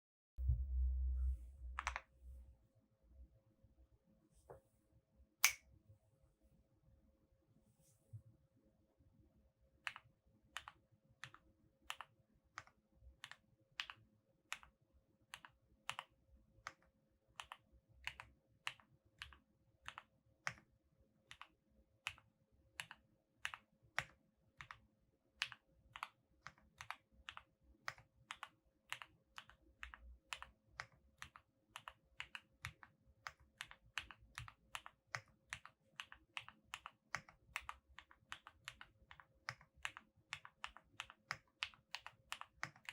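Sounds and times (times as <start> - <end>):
mechanical keyboard keystrokes: 25.4 - 42.9.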